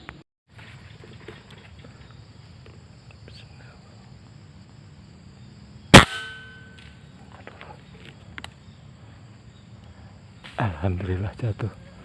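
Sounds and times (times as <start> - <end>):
air rifle shot: 6.0 - 6.6.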